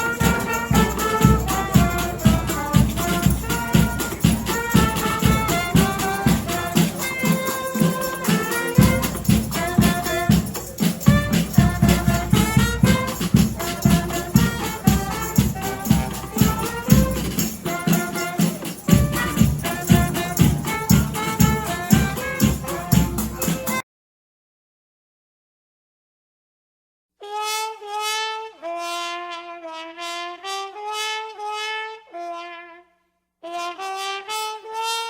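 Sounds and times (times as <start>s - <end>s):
marching drum beat: 0.0s - 23.8s
wind instruments playing a tune: 0.0s - 23.8s.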